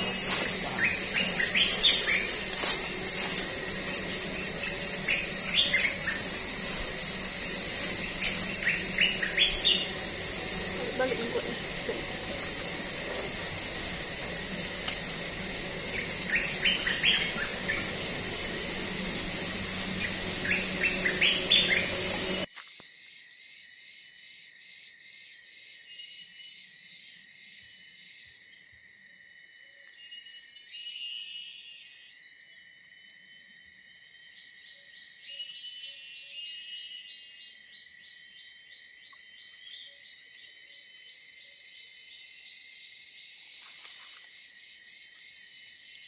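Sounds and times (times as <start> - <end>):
bird chirps: 0.0 - 22.4
high-pitched insect drone: 0.0 - 46.0
noisy forest background: 0.0 - 46.0.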